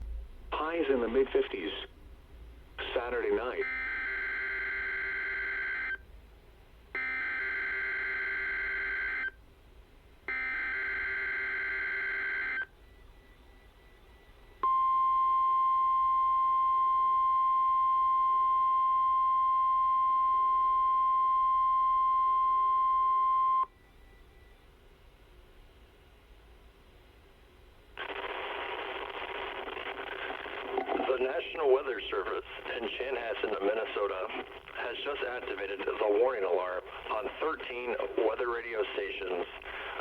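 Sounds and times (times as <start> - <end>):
steady alarm tone: 3.6 - 6.0, 7.0 - 9.3, 10.3 - 23.7.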